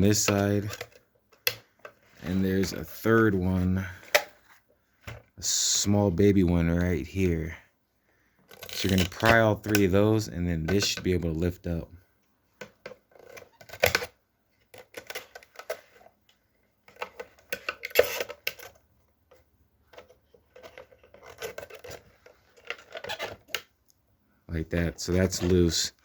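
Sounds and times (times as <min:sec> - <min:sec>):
plastic clips scraping and clicking: 0:00.0 - 0:02.8, 0:08.4 - 0:11.4, 0:12.6 - 0:23.8.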